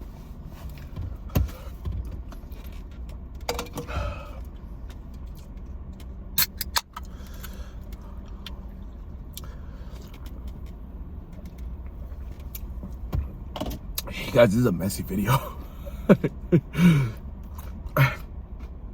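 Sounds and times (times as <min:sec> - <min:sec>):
car rumble: 0:00.0 - 0:18.9
sharp clicks and crunches: 0:04.9 - 0:08.6.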